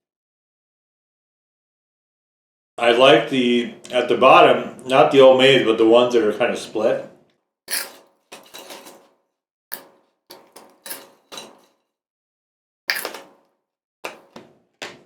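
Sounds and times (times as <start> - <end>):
pork rinds crunching: 12.9 - 13.3.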